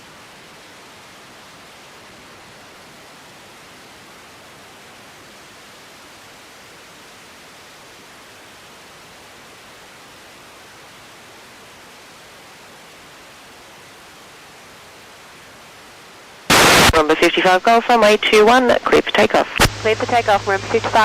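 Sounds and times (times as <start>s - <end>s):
radio static hiss: 16.5s - 21.0s.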